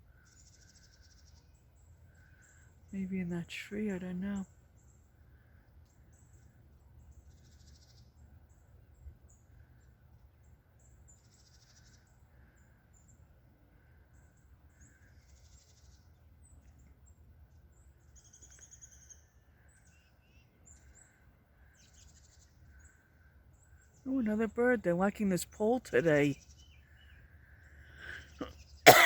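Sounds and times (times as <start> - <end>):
small birds chirping: 0.0 - 29.0.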